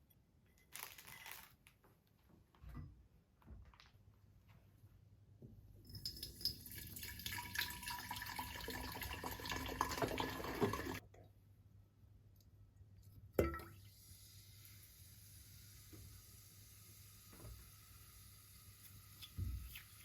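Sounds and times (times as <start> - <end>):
tap water running into container: 5.9 - 11.0, 13.4 - 20.0.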